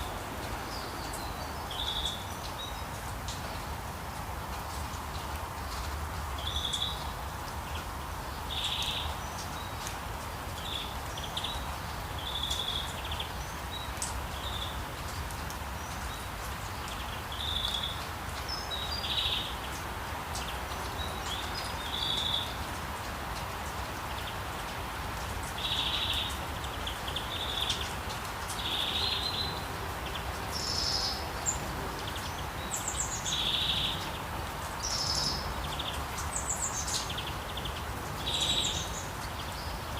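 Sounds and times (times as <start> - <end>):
rain hiss: 0.0 - 39.9
birds chirping: 25.4 - 39.9.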